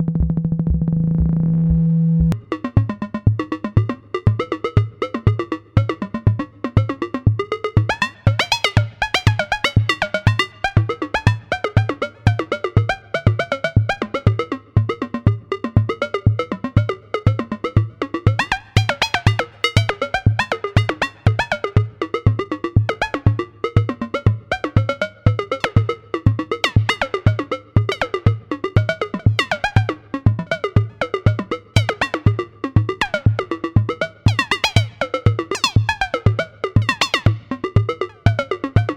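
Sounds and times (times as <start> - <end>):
plucky synth notes: 0.0 - 2.4, 25.6 - 27.3, 31.8 - 32.4, 33.0 - 38.9
electronic kick drum: 0.0 - 5.0, 17.8 - 38.9.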